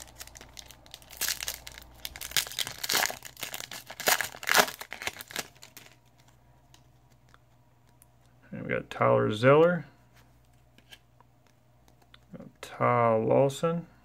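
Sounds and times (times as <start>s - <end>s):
foil wrapper tearing and crinkling: 0.0s - 6.3s.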